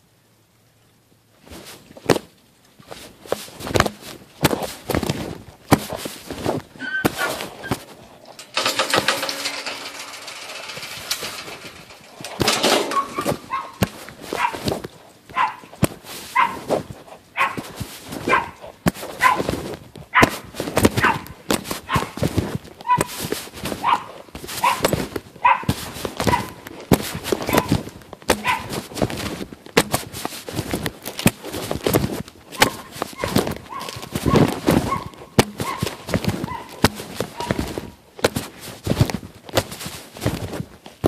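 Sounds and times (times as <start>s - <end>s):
sharp knocks and clatters: 2.9s - 16.0s, 20.2s - 40.4s
dogs yipping and whining: 6.8s - 7.8s, 12.9s - 14.6s, 15.3s - 19.5s, 20.1s - 22.2s, 22.8s - 23.2s, 23.8s - 26.6s, 27.4s - 28.7s, 32.5s - 37.9s.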